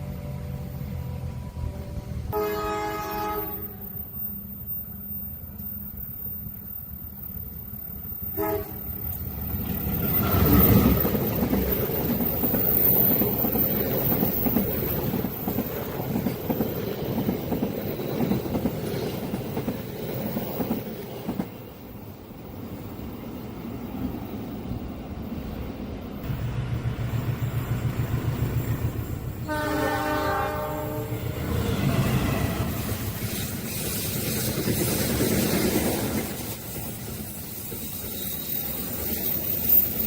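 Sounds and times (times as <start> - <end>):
train horn: 0.0 - 4.0, 8.3 - 8.9, 29.4 - 31.6
train wheels rumbling on rails: 5.6 - 40.0.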